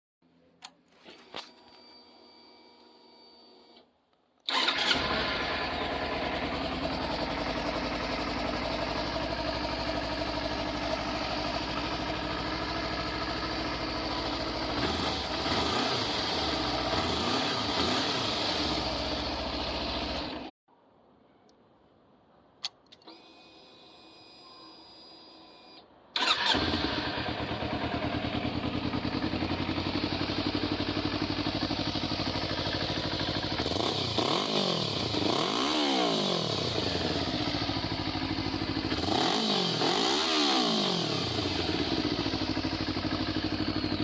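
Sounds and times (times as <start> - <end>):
motorcycle engine idling: 4.5 - 20.5, 26.2 - 44.0.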